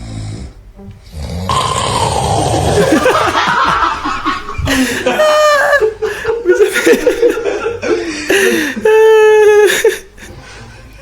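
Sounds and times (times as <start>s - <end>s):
person snoring loudly: 0.0s - 3.2s.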